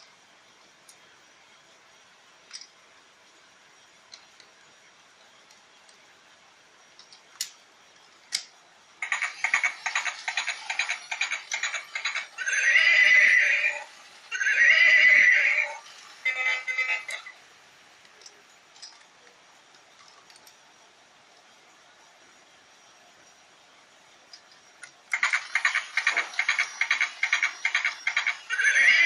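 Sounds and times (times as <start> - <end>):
toy clicks: 8.3 - 12.8, 24.3 - 29.0
electronic horse whinnies: 9.0 - 17.3, 25.1 - 29.0.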